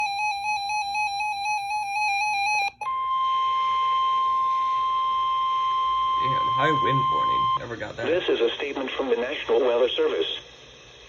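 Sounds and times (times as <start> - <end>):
steady high alarm tone: 0.0 - 8.3
buzzy warbling alarm: 2.8 - 8.3.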